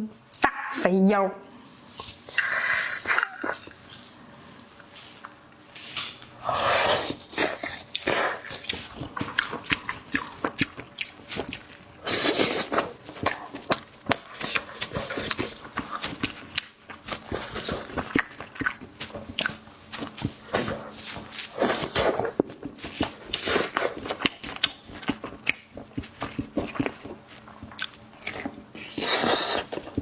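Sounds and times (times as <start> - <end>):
wet chewing and lip-smacking: 7.1 - 30.0.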